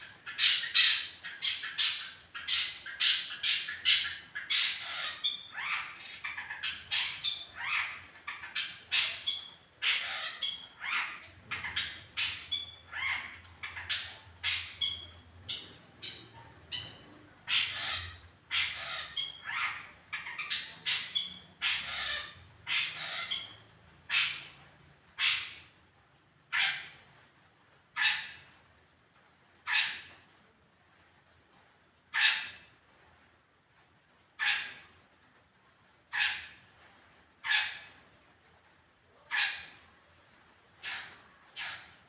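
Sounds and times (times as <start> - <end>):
bird harsh scratchy calls: 0.0 - 24.5, 29.7 - 30.1, 32.1 - 32.7, 34.4 - 34.8, 36.1 - 36.6, 37.4 - 37.9, 39.3 - 39.8, 40.8 - 42.0.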